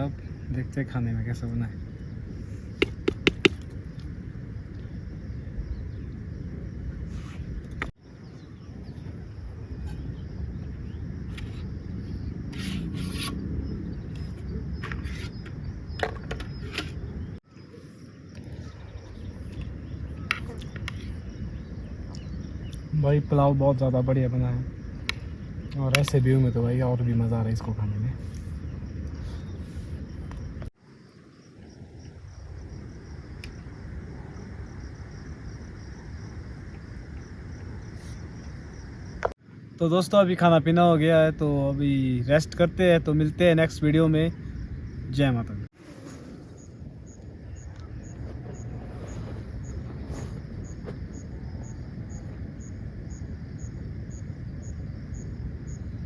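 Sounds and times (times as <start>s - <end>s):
steady low rumble: 0.0s - 30.8s, 31.7s - 39.4s
insects chirring: 0.0s - 56.0s.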